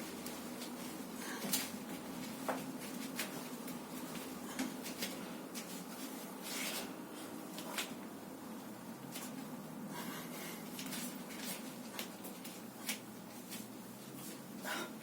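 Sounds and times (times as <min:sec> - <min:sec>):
clothes rustling: 0:00.0 - 0:08.1, 0:10.4 - 0:14.8.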